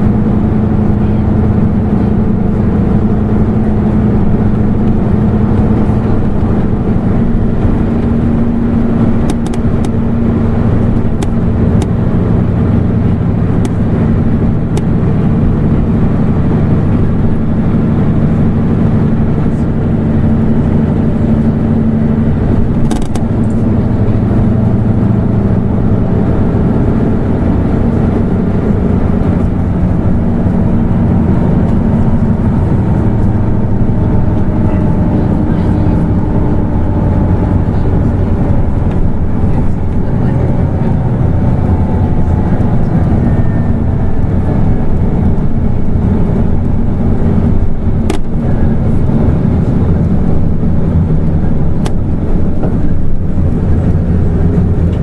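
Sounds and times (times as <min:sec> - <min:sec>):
bus engine drone: 0:00.0 - 0:55.0
clicks and rattles: 0:22.8 - 0:23.8.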